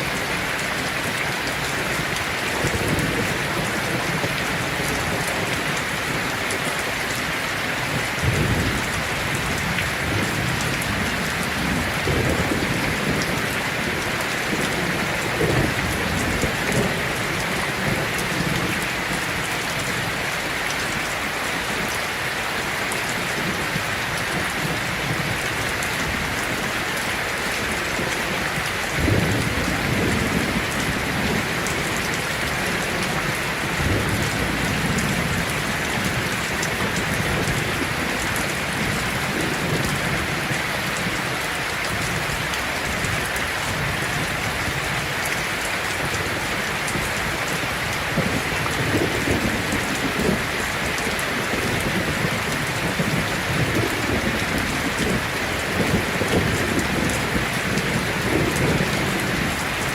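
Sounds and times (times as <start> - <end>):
heavy rain on a tin roof: 0.0 - 59.9
thunder rumbling: 7.8 - 19.4, 27.7 - 45.0.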